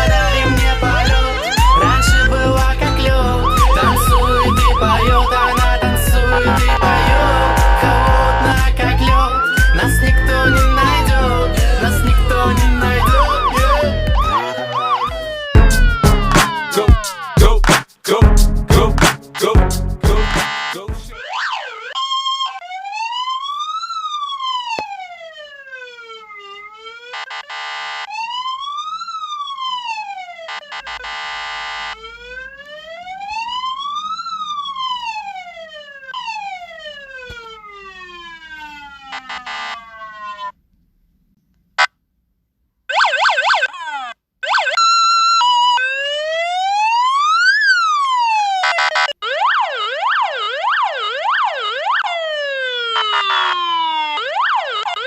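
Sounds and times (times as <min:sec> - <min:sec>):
electronic siren wailing: 0:00.0 - 0:17.5, 0:20.2 - 0:40.6, 0:42.9 - 0:55.0
horn-like blasts: 0:06.4 - 0:08.6.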